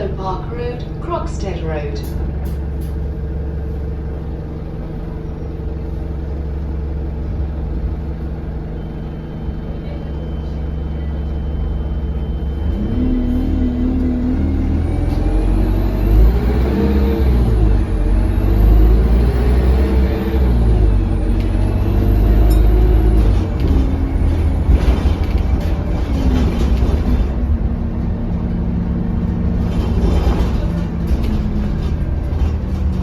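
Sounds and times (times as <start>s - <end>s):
bus engine pulling away: 0.0s - 33.0s.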